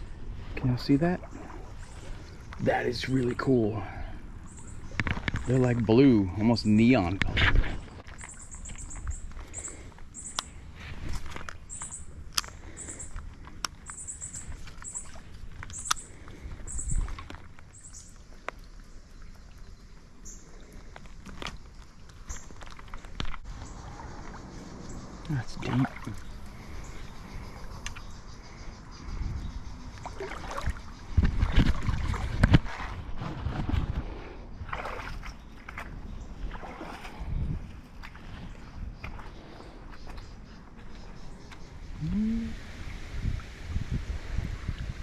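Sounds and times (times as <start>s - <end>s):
water sloshing around wading legs: 1.1s - 2.7s, 4.7s - 24.8s, 25.4s - 28.1s, 29.9s - 41.2s.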